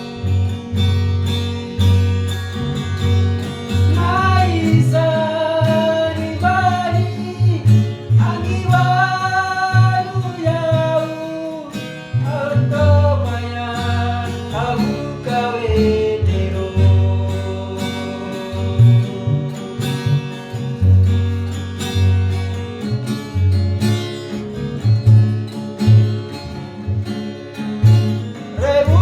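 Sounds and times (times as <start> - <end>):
bass notes: 0.0 - 29.0
plucked guitar: 0.0 - 29.0
person singing: 3.8 - 20.2, 28.5 - 29.0.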